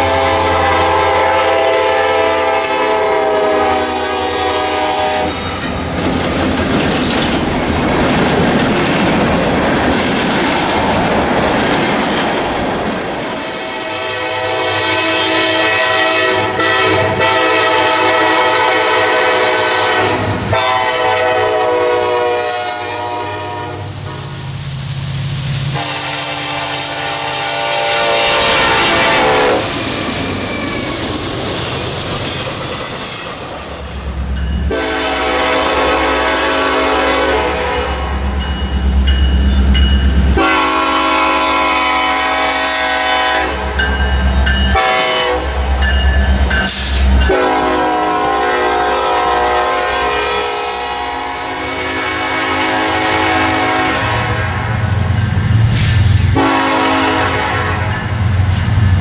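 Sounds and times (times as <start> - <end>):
locomotive air horn blasts: 0.0 - 5.6, 13.6 - 24.4, 25.8 - 29.7, 34.6 - 38.4, 39.7 - 43.9, 44.7 - 45.8, 46.7 - 54.7, 55.7 - 58.1
locomotive engine rumble: 0.0 - 13.7, 29.7 - 49.8
wheels clacking on rails: 5.2 - 13.7, 32.2 - 36.4, 37.1 - 41.3, 43.2 - 48.1.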